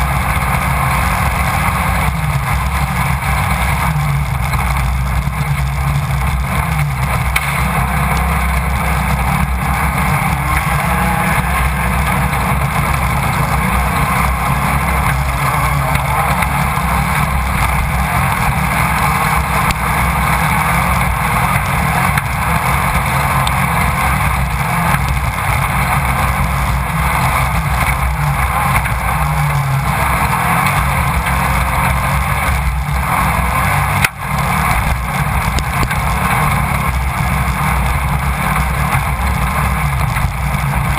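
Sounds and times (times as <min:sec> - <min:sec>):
buggy engine running hard: 0:00.0 - 0:40.9
road noise: 0:00.0 - 0:40.9
sharp crack: 0:00.2 - 0:26.8.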